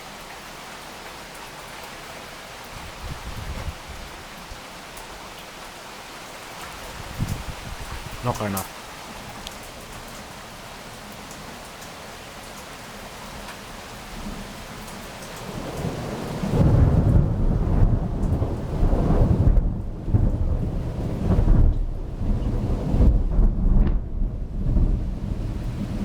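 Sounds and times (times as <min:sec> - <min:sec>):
rain hiss: 0:00.0 - 0:26.0
long low thunder rumble: 0:15.6 - 0:26.0.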